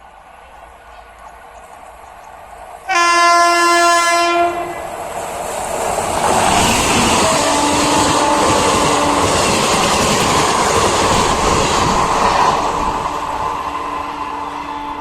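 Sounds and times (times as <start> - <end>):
train rumble and wheel clatter: 0.0 - 15.0
train horn blast: 2.9 - 4.8, 7.2 - 9.2.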